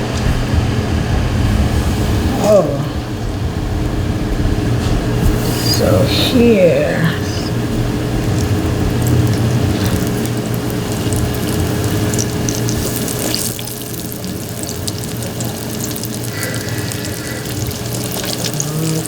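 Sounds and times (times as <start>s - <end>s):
low electric hum: 0.0s - 19.0s
chicken sizzling in hot oil: 7.5s - 19.0s.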